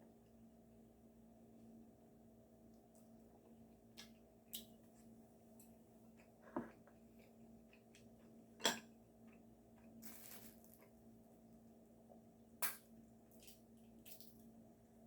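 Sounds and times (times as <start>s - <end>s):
soft rustle: 10.0s - 10.8s.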